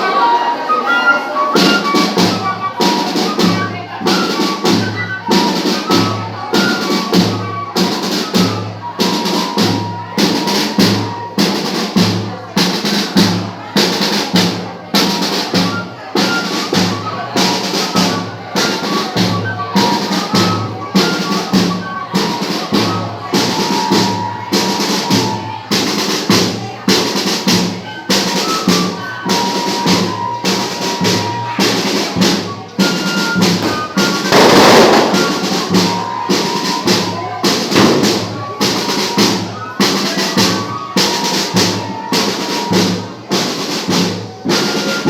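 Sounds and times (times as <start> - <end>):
bass drum and snare beat: 33.4 - 37.0, 37.7 - 38.3.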